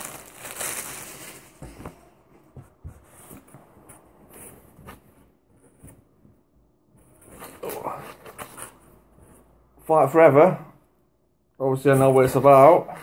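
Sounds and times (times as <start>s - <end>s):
cloth and packaging rustling: 0.0s - 6.4s.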